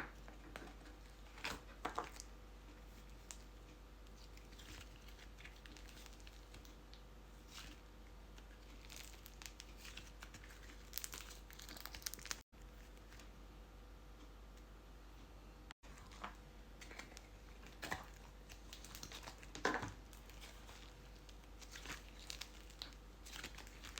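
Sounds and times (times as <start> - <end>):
crinkling handling noises: 0.0 - 13.4, 15.8 - 23.9.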